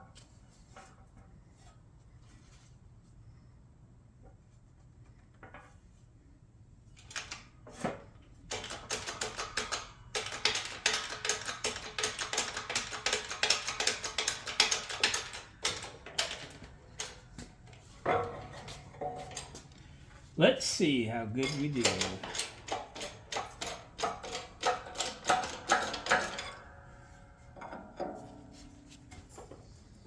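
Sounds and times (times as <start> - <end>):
sheet metal clicking and clattering: 8.5 - 17.3, 21.4 - 26.6.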